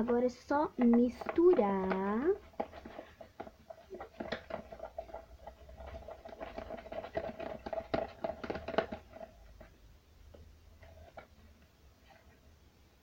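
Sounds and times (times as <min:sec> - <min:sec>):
spoon stirring and scraping pot: 0:00.0 - 0:09.8.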